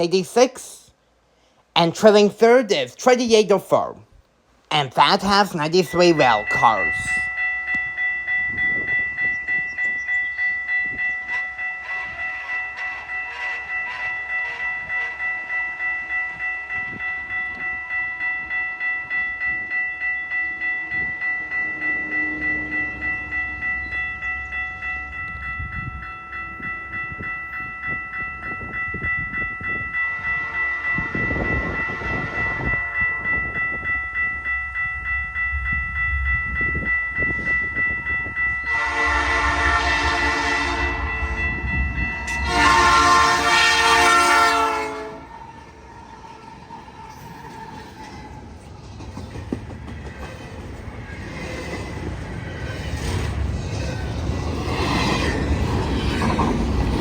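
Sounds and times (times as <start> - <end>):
freight train rumbling on rails: 4.7 - 57.0
pulsing bell ring: 5.8 - 44.4.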